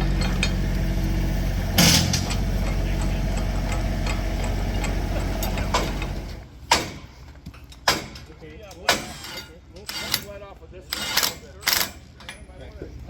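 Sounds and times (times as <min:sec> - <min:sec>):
engine idling: 0:00.0 - 0:06.5
loud sharp clank: 0:01.8 - 0:02.5.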